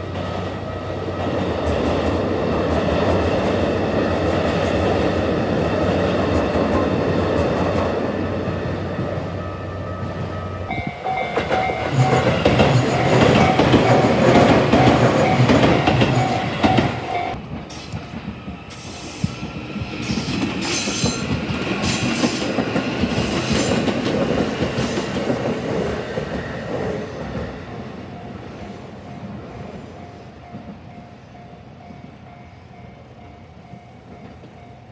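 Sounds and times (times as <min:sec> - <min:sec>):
level crossing warning tone: 0:09.4 - 0:17.4
train wheels clattering over joints: 0:11.0 - 0:27.0.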